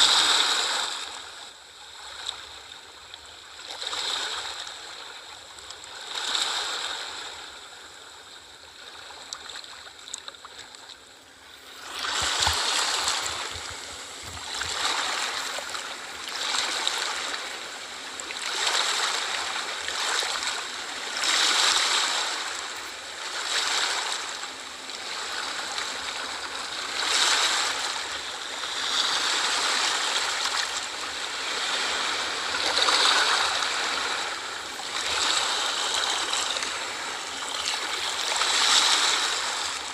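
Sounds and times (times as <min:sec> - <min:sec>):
ocean waves washing onto shore: 0:00.0 - 0:02.7, 0:10.5 - 0:39.9.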